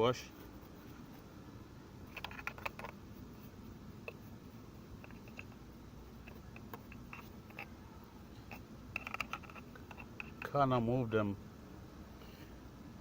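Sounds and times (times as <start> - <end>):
brush ticks and clicks: 5.0 - 7.8, 8.4 - 10.6.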